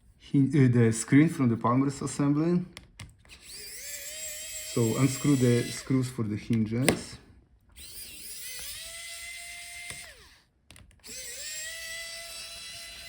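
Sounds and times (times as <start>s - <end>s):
electric screwdriver motor whine: 3.3s - 6.0s, 7.8s - 13.0s
screwdriver clicks: 7.8s - 13.0s.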